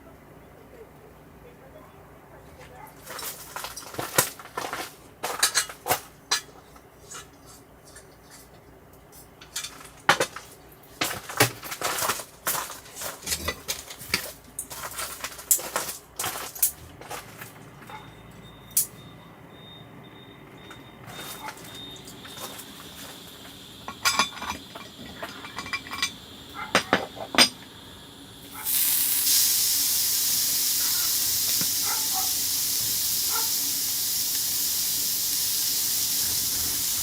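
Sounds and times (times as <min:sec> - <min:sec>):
metal cookware clinking: 0:05.3 - 0:07.3, 0:23.9 - 0:27.6.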